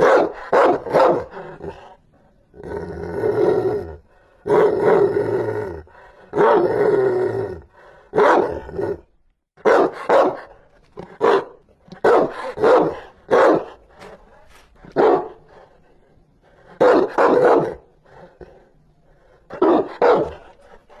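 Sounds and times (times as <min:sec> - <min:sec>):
dog barking fiercely: 0:00.0 - 0:01.6, 0:06.3 - 0:06.8, 0:08.1 - 0:08.8, 0:09.6 - 0:13.8, 0:14.9 - 0:15.6, 0:16.8 - 0:17.9, 0:19.5 - 0:21.0.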